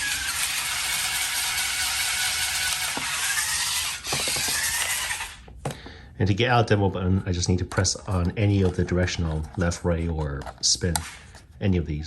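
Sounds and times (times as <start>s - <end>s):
toy car motors whirring: 0.0s - 5.5s.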